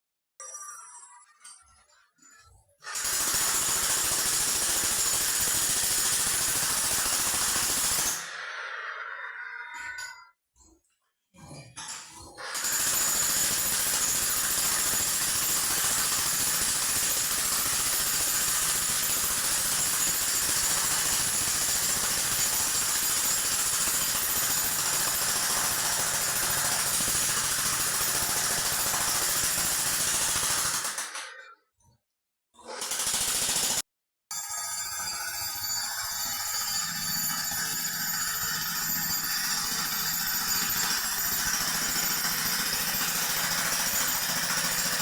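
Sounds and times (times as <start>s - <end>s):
electric jackhammer hammering: 12.5s - 31.3s, 32.7s - 33.8s, 36.8s - 45.0s.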